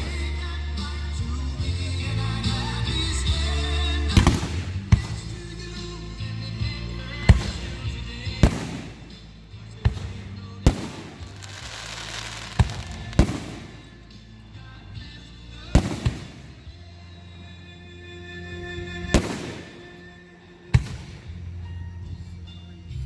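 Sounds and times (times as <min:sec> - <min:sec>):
background music: 0:00.0 - 0:23.0
fireworks bangs: 0:04.2 - 0:05.5, 0:07.2 - 0:14.1, 0:15.8 - 0:16.8, 0:19.1 - 0:20.1, 0:20.8 - 0:21.6
fireworks hissing and crackling: 0:07.4 - 0:14.0.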